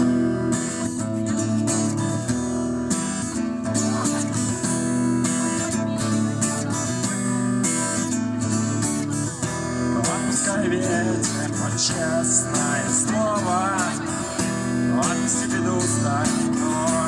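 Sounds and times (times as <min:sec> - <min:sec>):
guitar strumming chords: 0:00.0 - 0:17.0.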